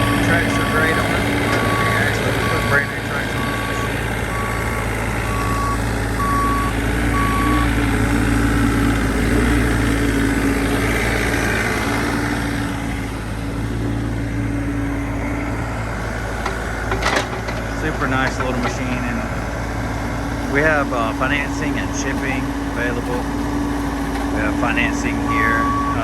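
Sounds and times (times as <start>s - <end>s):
travel alarm beeping: 0.0s - 7.7s, 25.3s - 26.0s
excavator diesel engine droning: 0.0s - 26.0s.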